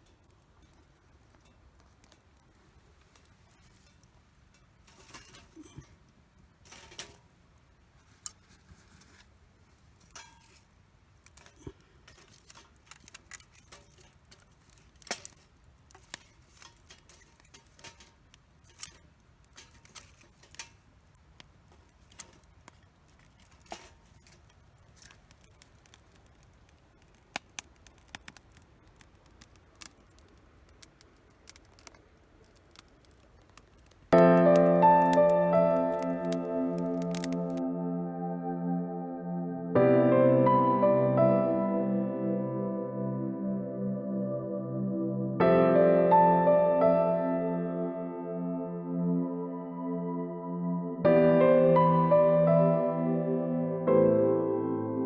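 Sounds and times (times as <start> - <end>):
campfire crackling and popping: 0.0 - 37.7.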